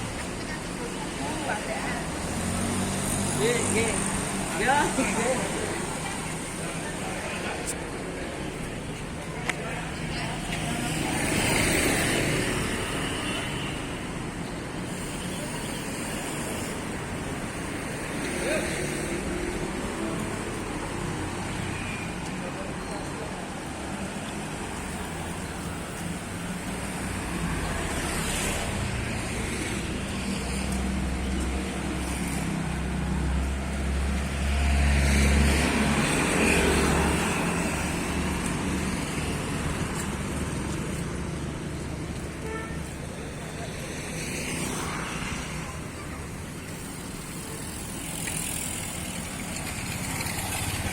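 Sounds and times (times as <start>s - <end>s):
street traffic: 0.0s - 50.9s.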